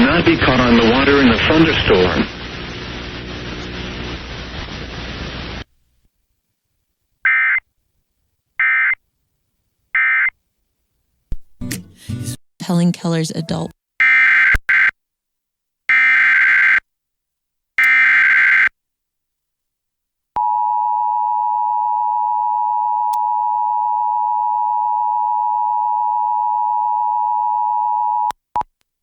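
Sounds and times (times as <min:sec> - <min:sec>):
digital header buzzing screech: 0:17.8 - 0:18.7.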